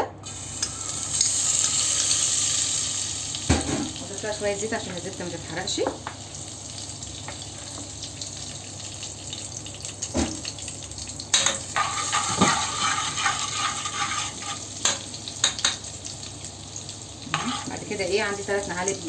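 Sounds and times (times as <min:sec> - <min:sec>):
butter and oil sizzling: 0:00.2 - 0:19.0
spoon stirring and knocking pan: 0:11.3 - 0:15.9.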